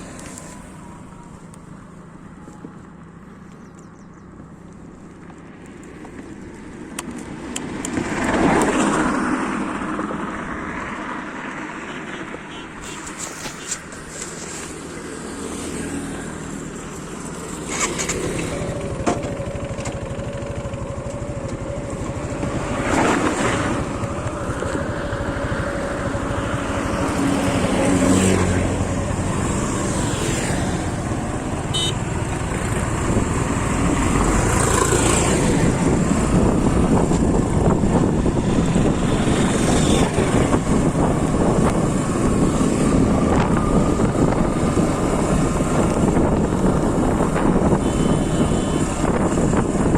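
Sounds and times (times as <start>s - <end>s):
passing traffic whooshes: 0.0s - 49.9s
motorcycle engine running: 13.0s - 49.9s
wind rush over microphone: 32.5s - 49.9s.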